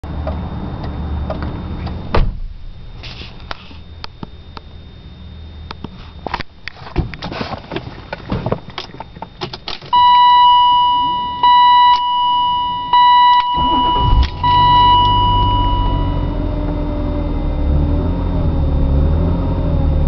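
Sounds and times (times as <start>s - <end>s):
loud thump: 2.1s - 3.4s, 13.6s - 15.8s.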